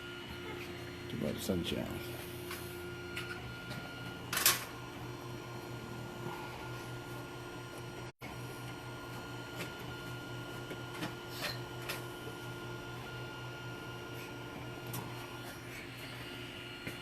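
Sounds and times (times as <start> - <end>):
three d printer motors humming: 0.0 - 17.0.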